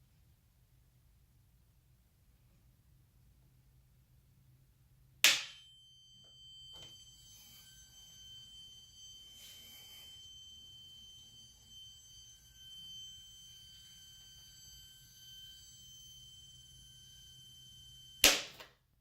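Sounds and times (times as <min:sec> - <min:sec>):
speaker high-pitched whine: 0:05.2 - 0:18.6
loud speaker pop: 0:18.2 - 0:18.7.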